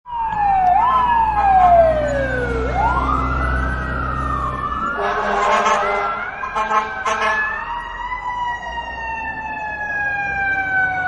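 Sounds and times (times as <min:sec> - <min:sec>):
fire truck sirens wailing: 0:00.1 - 0:11.0.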